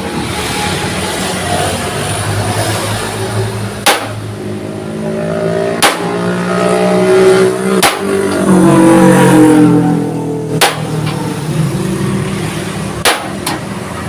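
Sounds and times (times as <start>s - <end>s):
sharp knocks: 3.8s - 4.2s, 5.8s - 6.2s, 7.8s - 8.2s, 10.6s - 11.2s, 13.0s - 13.6s.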